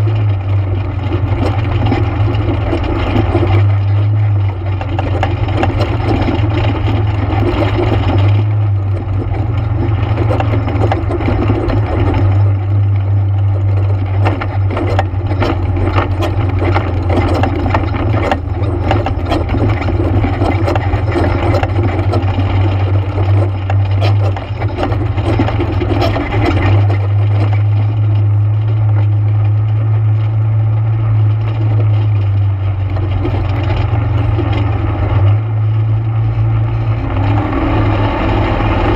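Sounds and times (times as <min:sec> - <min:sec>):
atv engine running: 0:00.0 - 0:38.9
clicks and rattles: 0:00.0 - 0:38.9.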